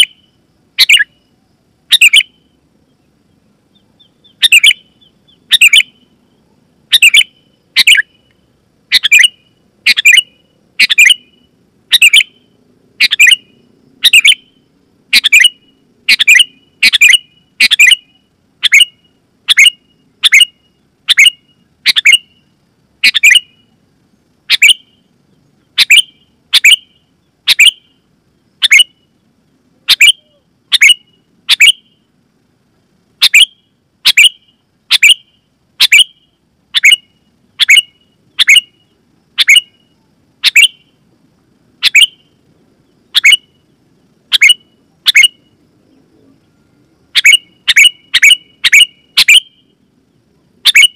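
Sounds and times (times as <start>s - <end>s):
bulbul chirping loudly: 0.0s - 1.2s, 1.9s - 2.5s, 3.7s - 6.2s, 6.9s - 8.3s, 8.9s - 23.7s, 24.5s - 28.0s, 28.6s - 29.1s, 29.8s - 32.1s, 33.2s - 41.0s, 41.8s - 42.4s, 43.1s - 43.7s, 44.3s - 45.6s, 47.1s - 49.8s, 50.6s - 50.9s.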